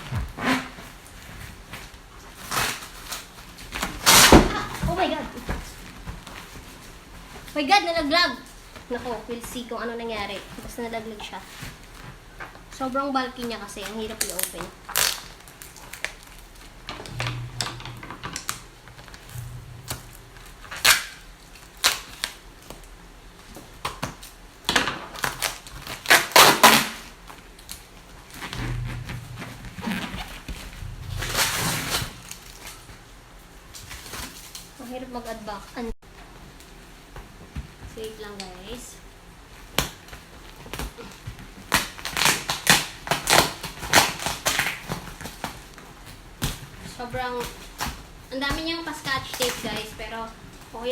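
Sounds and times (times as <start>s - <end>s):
packaging tape ripping: 2.4s - 4.8s, 14.1s - 16.7s, 20.7s - 22.4s, 25.1s - 29.3s, 41.7s - 45.6s.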